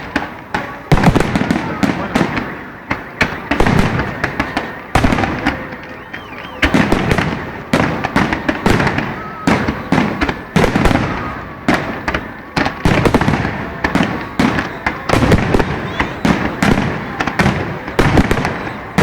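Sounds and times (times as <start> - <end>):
fireworks bursting with bangs: 0.0 - 19.0.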